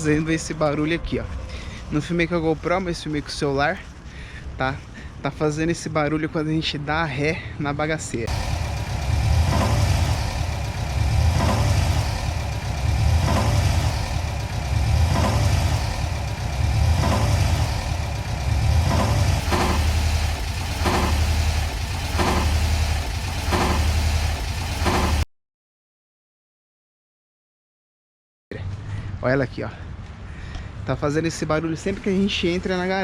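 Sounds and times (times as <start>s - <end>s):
pulsing metallic clatter: 8.3s - 25.2s
air-cooled engine running: 8.3s - 25.3s.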